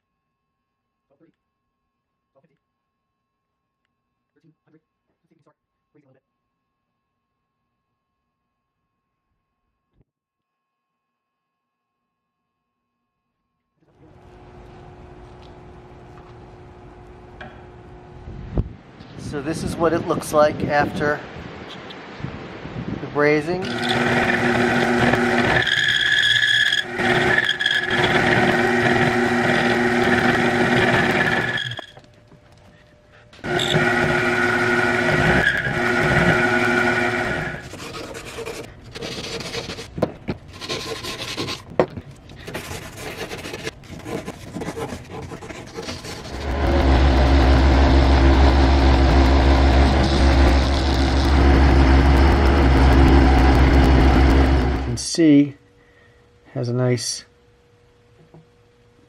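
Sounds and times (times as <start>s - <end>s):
shop machine whining and grinding: 14.0s - 18.3s, 23.5s - 32.7s, 33.3s - 39.8s, 45.5s - 55.0s.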